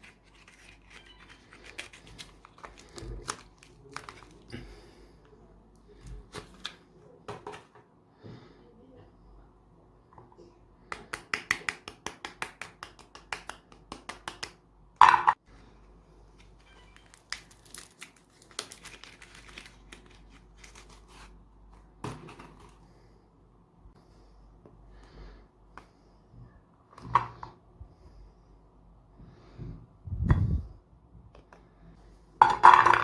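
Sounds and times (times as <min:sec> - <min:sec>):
crinkling of something crushed: 0:00.0 - 0:04.6, 0:16.5 - 0:21.2.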